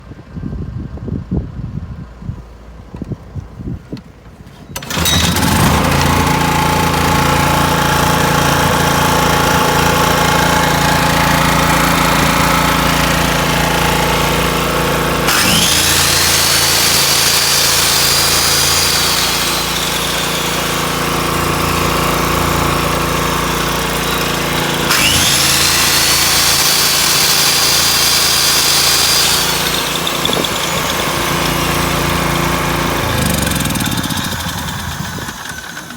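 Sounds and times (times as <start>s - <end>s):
power tool whirring: 4.4s - 35.9s
generator engine running: 4.7s - 35.9s.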